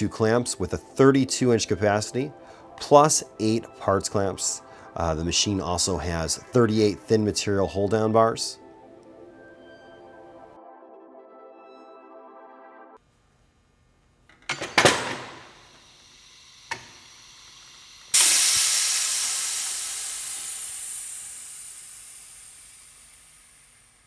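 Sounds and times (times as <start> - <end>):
metal knocks clattering: 14.3 - 15.6
compressed air hissing: 14.5 - 24.0
sharp click: 16.7 - 17.1.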